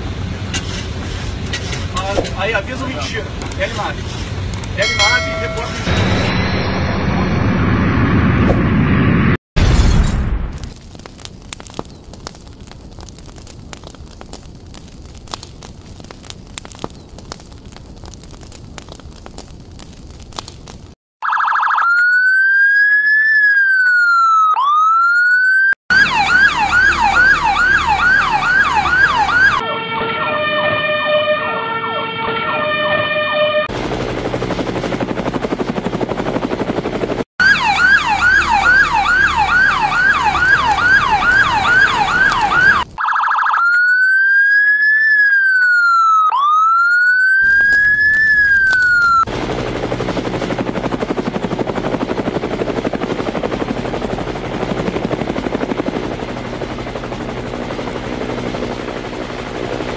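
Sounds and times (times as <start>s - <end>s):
electronic toy siren: 21.2s - 33.7s, 37.4s - 49.3s.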